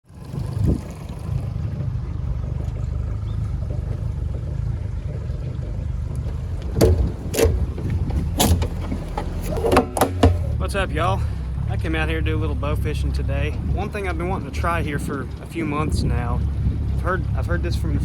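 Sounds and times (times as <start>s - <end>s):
boat engine rumble: 0.0s - 18.0s
sharp knocks: 6.6s - 10.6s.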